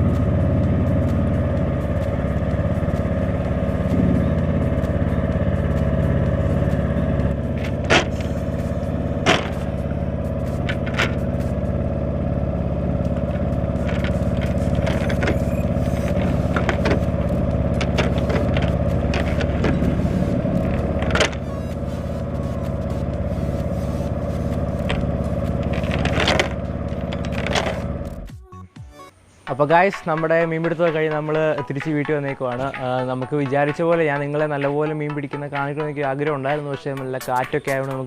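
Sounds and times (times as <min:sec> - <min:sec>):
engine running steadily: 0:00.0 - 0:38.0
sharp knocks and clatter: 0:06.4 - 0:11.6, 0:13.0 - 0:21.4, 0:24.4 - 0:28.2.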